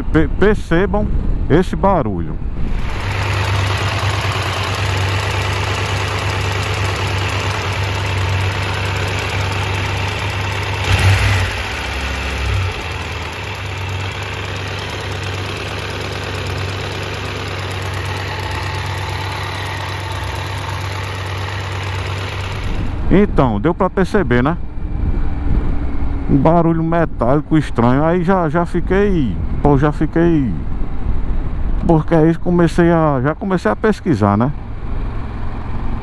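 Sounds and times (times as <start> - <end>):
motorcycle engine idling: 2.7 - 23.1.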